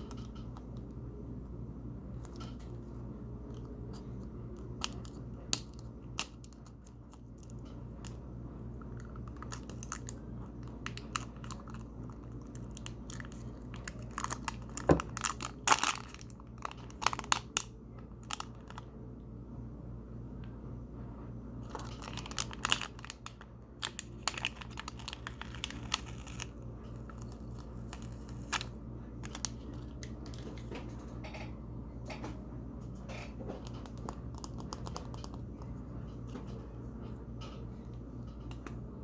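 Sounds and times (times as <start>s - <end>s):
low electrical hum: 0.0s - 39.0s
plastic packaging crinkling: 8.8s - 18.9s, 21.6s - 30.6s.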